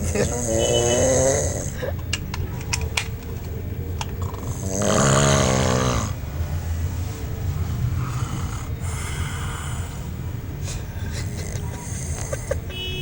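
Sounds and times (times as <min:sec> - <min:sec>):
man snoring heavily: 0:00.0 - 0:01.9, 0:04.2 - 0:06.2, 0:07.7 - 0:12.6.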